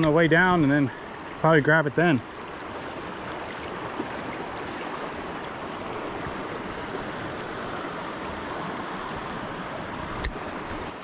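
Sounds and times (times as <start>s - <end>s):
creek water rushing: 0.0s - 11.0s.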